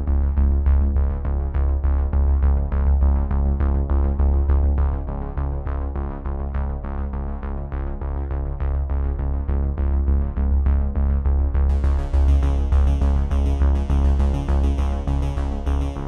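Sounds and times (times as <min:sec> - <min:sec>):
electronic synthesizer music: 0:11.7 - 0:16.0.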